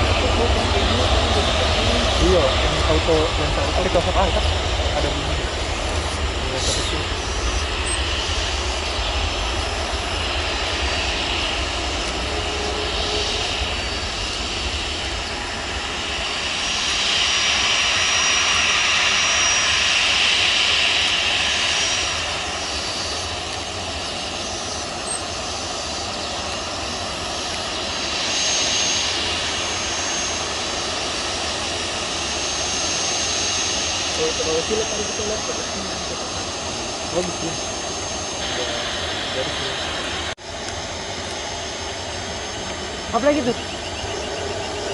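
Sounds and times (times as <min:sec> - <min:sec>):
thin high whine: 0:00.0 - 0:18.5, 0:21.8 - 0:44.9
jet engines rushing: 0:00.0 - 0:44.9.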